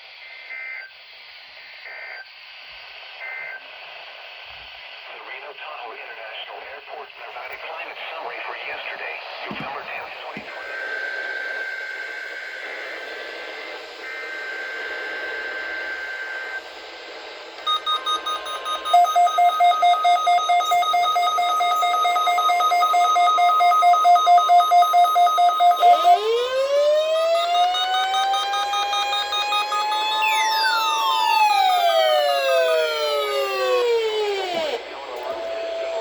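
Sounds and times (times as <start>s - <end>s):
fast-pulsing beeping alarm: 17.6s - 34.8s
siren winding up: 17.6s - 36.0s
steady high beep: 17.7s - 34.3s.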